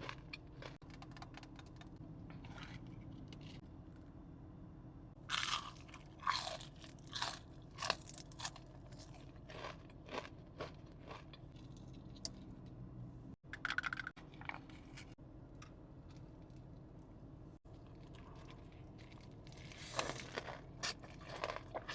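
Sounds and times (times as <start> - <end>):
crisp chewing crunches: 0.0 - 1.8, 5.3 - 12.2, 17.7 - 21.9.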